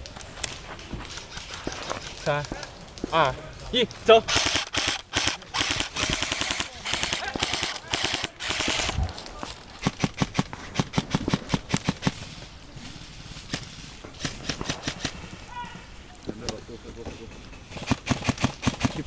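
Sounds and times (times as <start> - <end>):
airsoft guns firing: 4.0 - 19.0.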